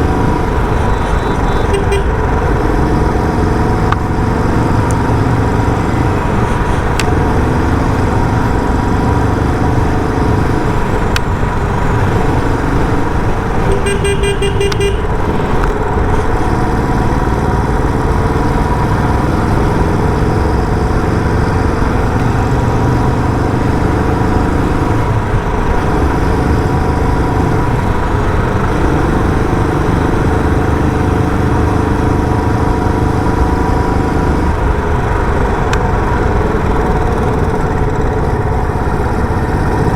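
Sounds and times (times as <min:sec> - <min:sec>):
motorcycle engine revving: 0:00.0 - 0:39.9
horn short toots: 0:00.8 - 0:02.4, 0:13.6 - 0:15.3.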